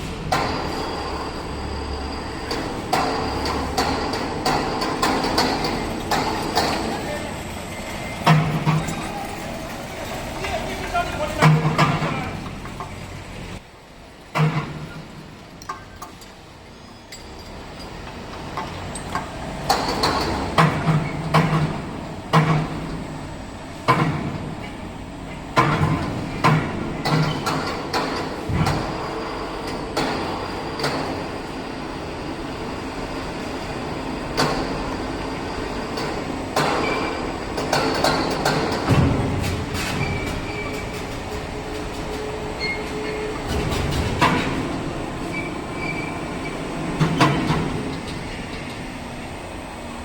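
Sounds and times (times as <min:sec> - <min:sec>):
metal clanks and knocks: 0:00.0 - 0:01.5, 0:02.4 - 0:07.1, 0:08.2 - 0:13.2, 0:14.3 - 0:16.4, 0:17.1 - 0:23.2, 0:23.8 - 0:31.3, 0:36.0 - 0:48.9.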